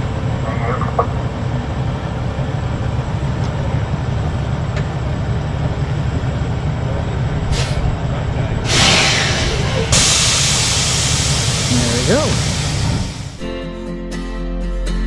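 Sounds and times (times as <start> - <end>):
harvest machinery engine drone: 0.0 - 13.5
short hiss: 8.7 - 13.4.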